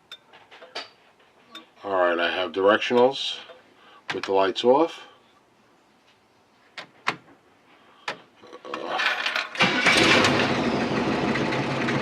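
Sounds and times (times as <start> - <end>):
van engine starting and idling: 9.0 - 12.0.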